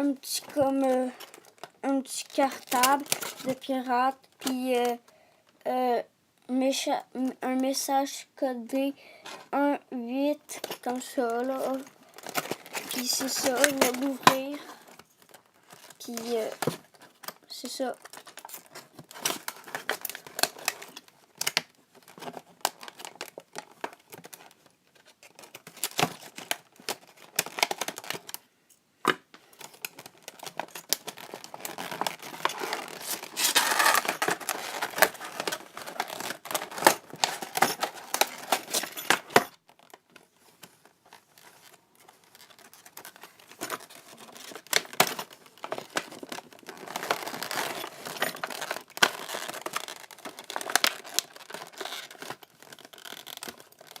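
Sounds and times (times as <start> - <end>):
packaging crinkling and tearing: 1.0 - 3.7, 10.6 - 28.4, 29.4 - 54.0.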